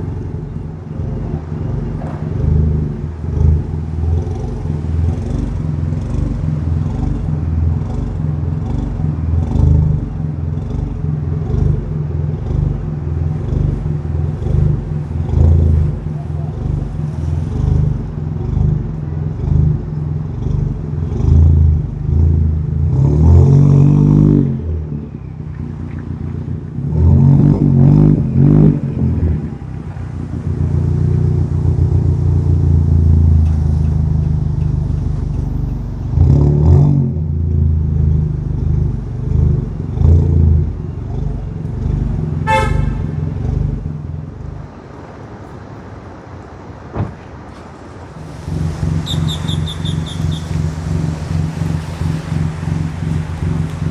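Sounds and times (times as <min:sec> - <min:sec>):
car engine accelerating: 0:00.0 - 0:53.9
horn toot: 0:42.4 - 0:43.6.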